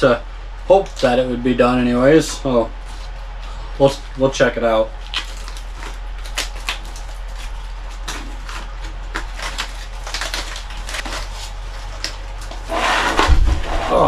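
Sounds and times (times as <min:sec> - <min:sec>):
tinfoil packet crinkling: 0:02.2 - 0:12.7.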